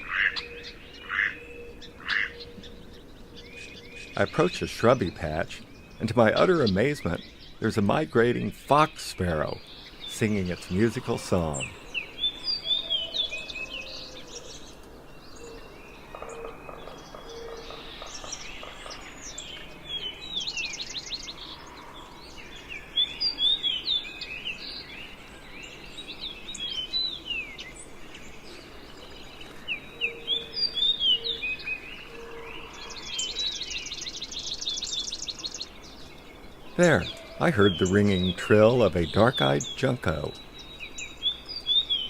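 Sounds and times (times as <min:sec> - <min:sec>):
sparrow whistled song: 0:00.0 - 0:07.7, 0:09.5 - 0:42.0.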